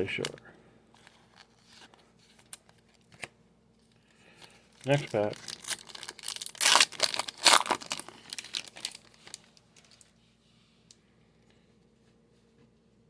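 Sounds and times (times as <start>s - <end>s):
wrapper being torn and crumpled: 4.7s - 10.1s.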